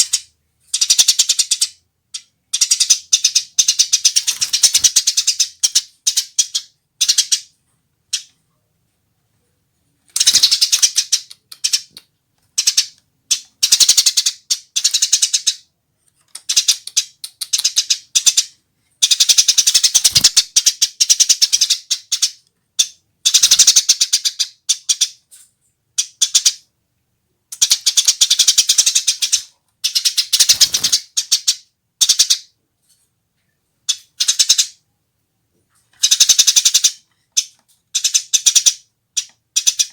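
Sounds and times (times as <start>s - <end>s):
sparrow chirping in rattling runs: 2.6s - 7.4s, 10.2s - 11.9s, 19.0s - 22.3s, 27.7s - 32.2s.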